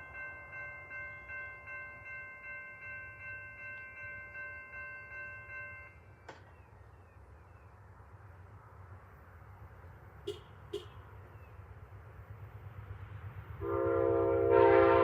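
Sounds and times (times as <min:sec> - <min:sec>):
railroad bell ringing: 0:00.0 - 0:06.2.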